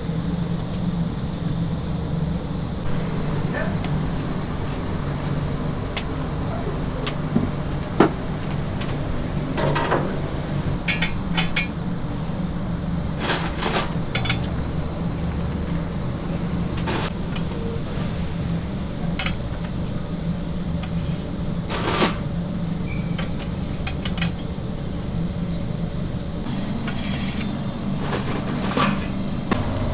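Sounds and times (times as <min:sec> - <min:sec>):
steady low hum: 0:01.4 - 0:10.8, 0:26.4 - 0:29.9
dishes and utensils clinking: 0:02.8 - 0:11.2.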